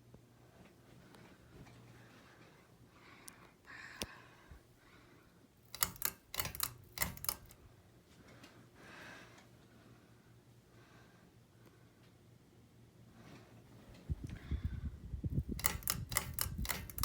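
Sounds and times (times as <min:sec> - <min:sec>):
ceiling fan humming: 0:00.0 - 0:17.0
sharp clicks and rattles: 0:05.7 - 0:07.6, 0:15.4 - 0:17.0.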